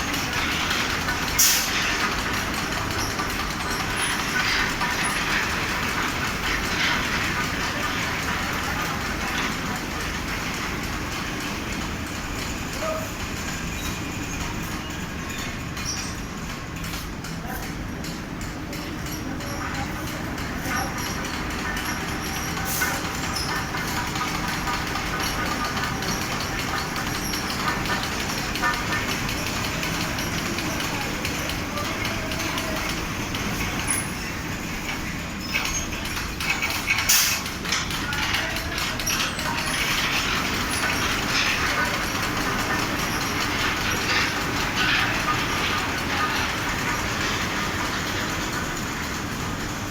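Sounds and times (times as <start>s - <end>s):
fabric spreading machine running: 0.0s - 49.9s
clattering: 35.7s - 48.6s.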